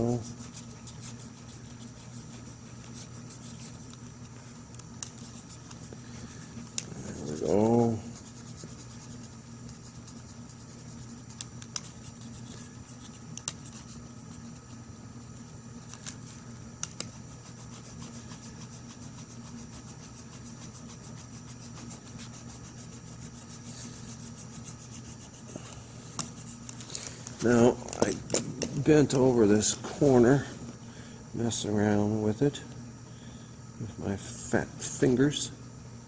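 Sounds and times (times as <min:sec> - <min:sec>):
tool rubbing and scraping tape: 0:00.0 - 0:04.4, 0:05.0 - 0:06.0, 0:06.9 - 0:27.6
steady low hum: 0:00.0 - 0:36.0.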